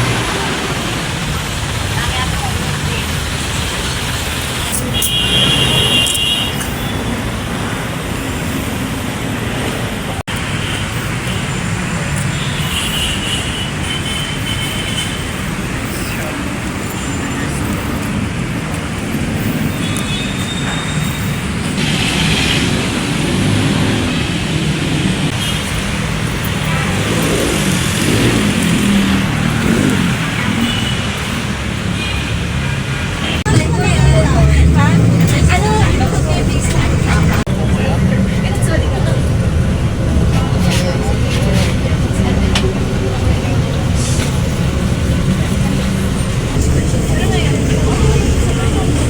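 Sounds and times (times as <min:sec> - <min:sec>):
traffic-like background noise: 0:00.0 - 0:49.0
vehicle engine running: 0:21.8 - 0:31.7, 0:33.2 - 0:49.0.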